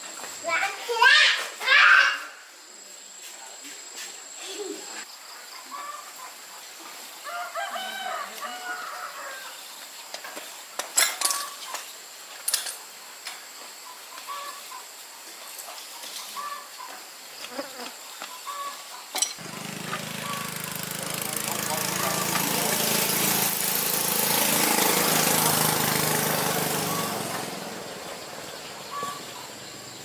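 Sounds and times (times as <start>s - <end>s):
chickens clucking: 5.5s - 6.7s, 13.8s - 17.0s, 18.2s - 22.8s, 25.5s - 30.0s
high insect whine: 7.0s - 19.5s, 20.2s - 30.0s
motorbike engine idling: 19.4s - 30.0s.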